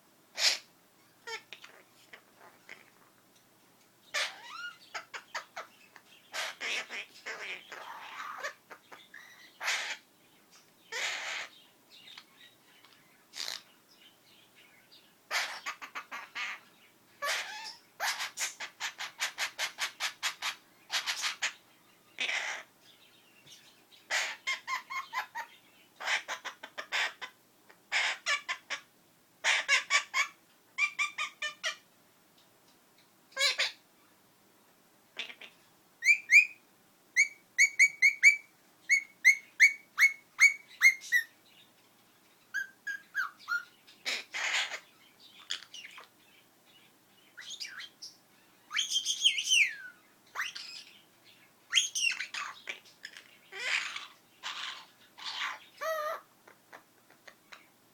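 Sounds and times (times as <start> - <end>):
parrot raspy chattering: 0.4 - 3.0, 4.1 - 10.1, 10.9 - 11.6, 13.4 - 13.7, 15.3 - 16.6, 17.2 - 21.6, 22.2 - 22.7, 24.1 - 31.8, 33.4 - 33.8, 35.2 - 36.6, 37.2 - 41.3, 42.5 - 46.1, 48.6 - 50.9, 51.7 - 57.7.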